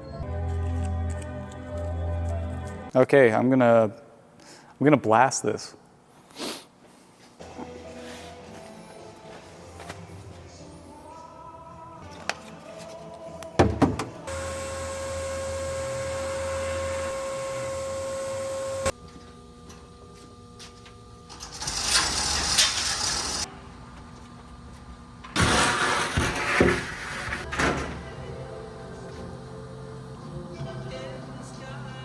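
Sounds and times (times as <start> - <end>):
motor humming: 14.3 - 25.4, 27.5 - 32.0.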